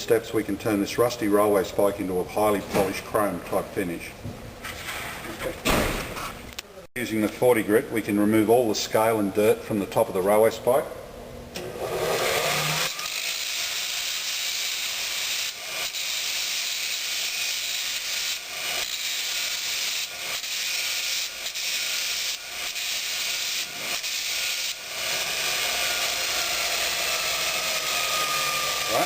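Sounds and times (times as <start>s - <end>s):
belt grinder grinding metal: 11.8s - 29.0s.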